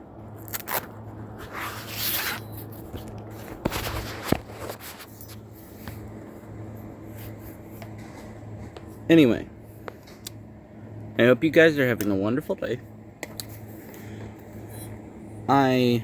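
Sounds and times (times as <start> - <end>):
steady low hum: 0.0 - 16.0
scraping and rustling handling: 0.5 - 9.1.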